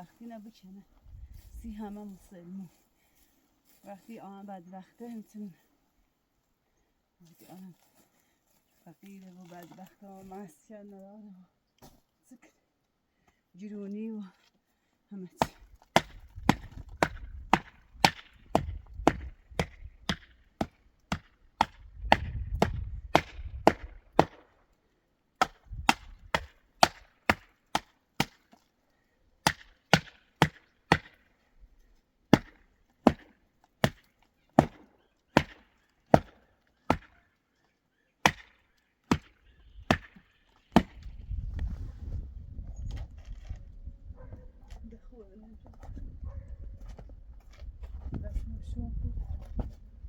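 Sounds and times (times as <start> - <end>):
sharp chopping strikes: 15.4 - 24.5, 25.4 - 28.4, 29.4 - 31.2, 32.3 - 37.2, 38.2 - 40.2.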